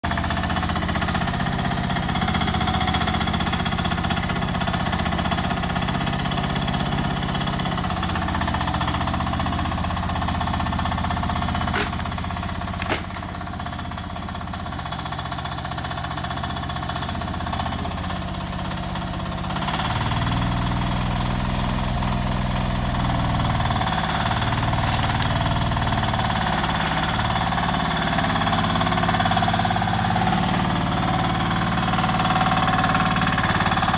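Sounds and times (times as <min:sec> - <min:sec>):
excavator engine running: 0:00.0 - 0:33.9
sharp knocks: 0:12.8 - 0:13.3.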